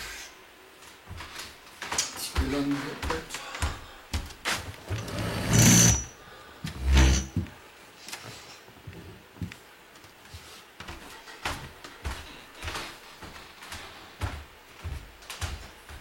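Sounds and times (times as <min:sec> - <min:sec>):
boxes scraping on floor: 0:04.9 - 0:06.1, 0:06.7 - 0:07.4.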